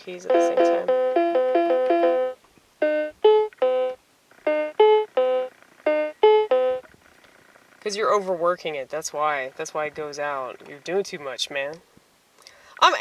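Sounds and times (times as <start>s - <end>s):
electronic keyboard single notes: 0.0s - 6.9s.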